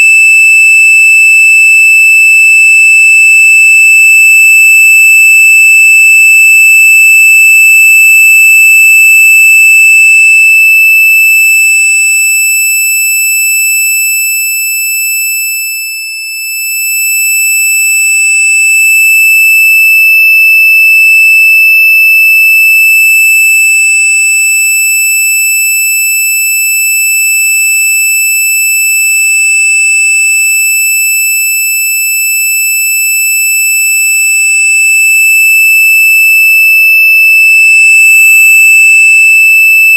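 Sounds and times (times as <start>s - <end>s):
high-pitched electronic tone: 37.5s - 39.4s.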